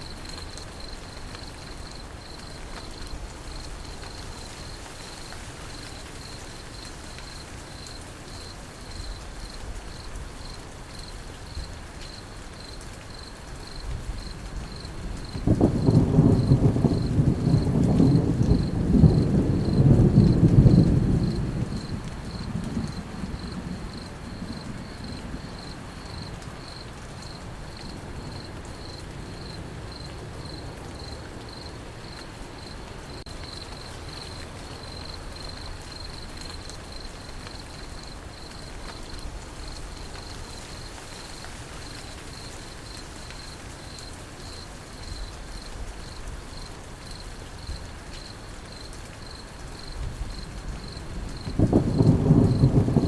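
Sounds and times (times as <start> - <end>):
crickets chirping: 0.0 - 53.0
falling rain hiss: 0.0 - 53.0
low thunder rumble: 13.9 - 26.6, 49.9 - 53.0.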